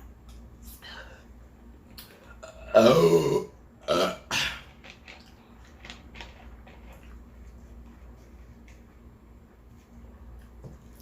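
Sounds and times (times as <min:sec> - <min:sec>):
person burping: 0:02.4 - 0:04.6.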